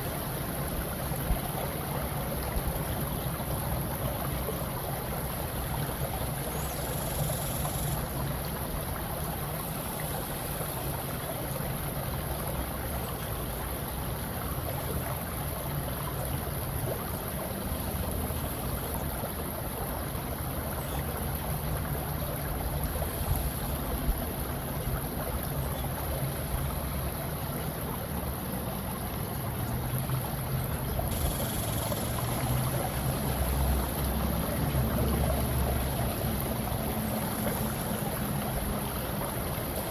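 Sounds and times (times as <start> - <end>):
water rushing: 0.0 - 39.9.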